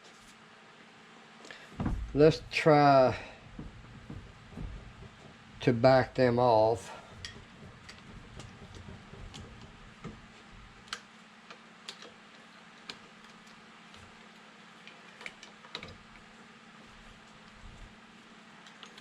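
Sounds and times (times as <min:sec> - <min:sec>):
steady low hum: 0:01.4 - 0:14.2.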